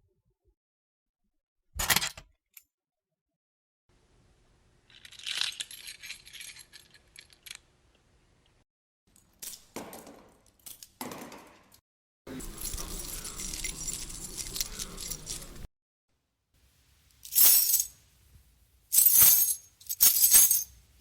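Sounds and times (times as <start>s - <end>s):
metal keys jingling: 12.3s - 15.7s, 17.2s - 18.0s, 19.0s - 20.8s.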